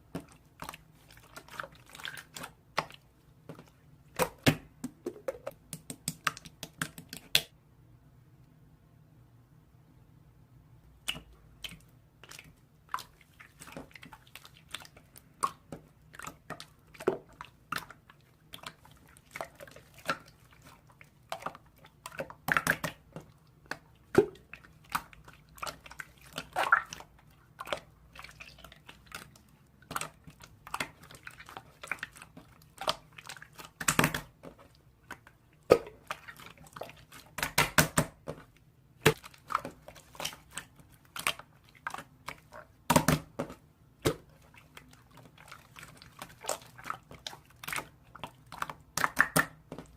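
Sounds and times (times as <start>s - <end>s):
slime squeezed with wet pops: 11.0s - 34.4s, 44.0s - 49.9s.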